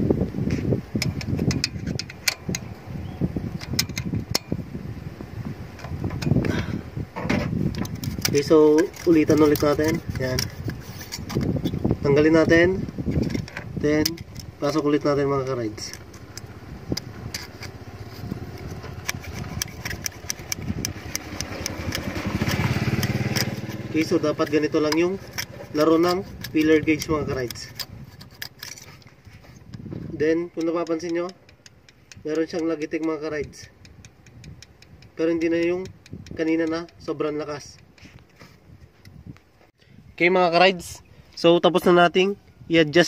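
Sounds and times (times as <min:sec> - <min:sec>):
steady low rumble: 0:00.0 - 0:40.2
metallic tool clicks and taps: 0:01.0 - 0:02.7, 0:03.6 - 0:04.5, 0:07.7 - 0:11.8, 0:13.1 - 0:38.3.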